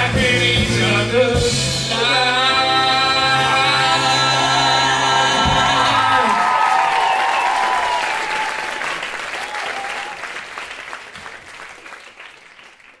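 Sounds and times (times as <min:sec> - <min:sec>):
audience applauding: 0:04.4 - 0:13.0.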